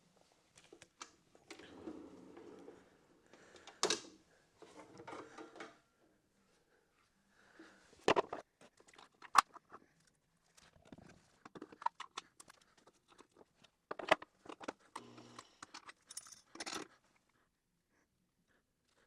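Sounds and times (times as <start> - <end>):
metal parts clinking: 15.6 - 16.9.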